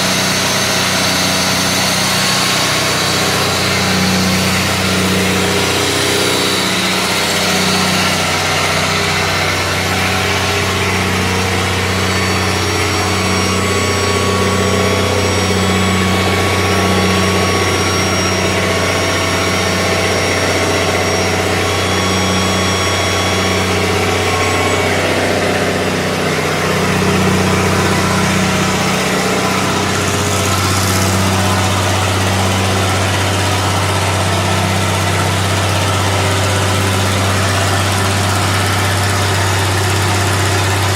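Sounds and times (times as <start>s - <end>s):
generator and air compressor hum: 0.0s - 40.9s.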